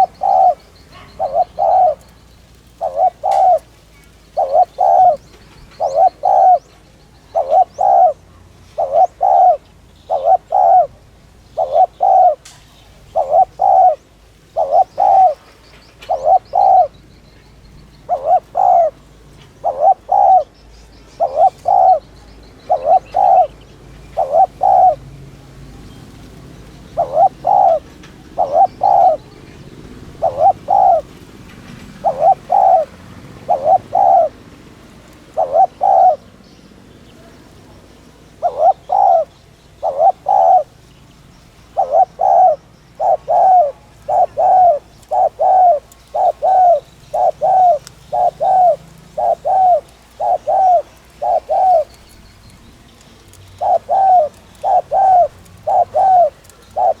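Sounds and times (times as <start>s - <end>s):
dove cooing: 0.0s - 57.0s.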